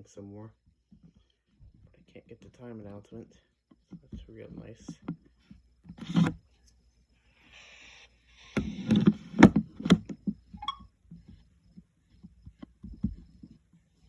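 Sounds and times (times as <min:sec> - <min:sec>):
plastic clock clicks and knocks: 0:08.6 - 0:10.2
brief squeak: 0:10.5 - 0:10.9.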